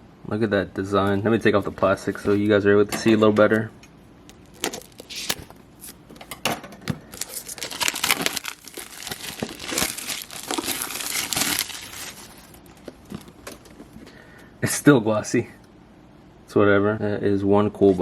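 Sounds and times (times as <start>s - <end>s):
plastic wrap crinkling: 4.3s - 6.0s, 7.0s - 13.8s
plastic wrap tearing: 4.3s - 6.0s, 7.1s - 13.3s.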